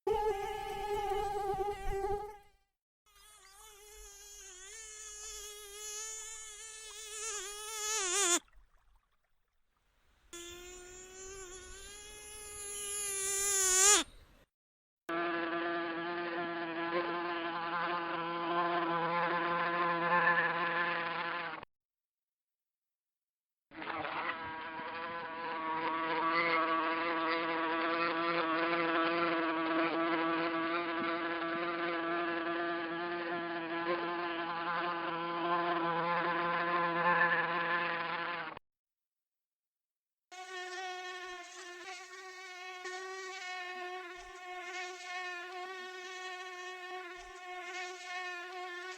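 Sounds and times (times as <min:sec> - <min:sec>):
mosquito wings whining: 0:03.1 - 0:08.4, 0:10.4 - 0:14.2, 0:40.4 - 0:48.9.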